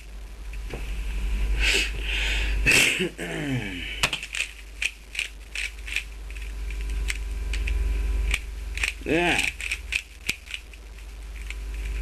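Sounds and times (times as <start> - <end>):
plastic puzzle cube clicking: 4.0 - 10.8.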